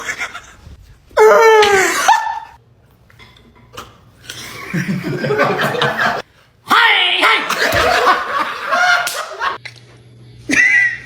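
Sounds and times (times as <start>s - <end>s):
laughter: 4.4s - 6.2s, 7.5s - 9.6s, 10.5s - 11.0s.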